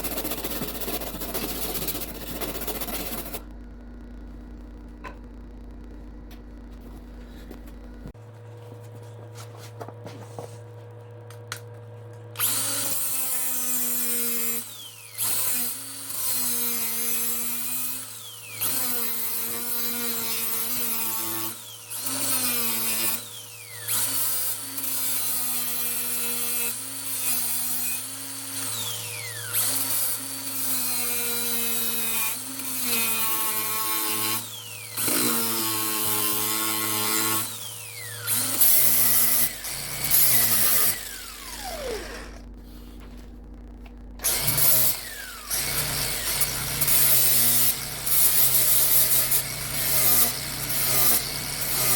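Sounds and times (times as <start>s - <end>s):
electric power tool on steel: 12.4s - 42.5s, 44.2s - 51.9s.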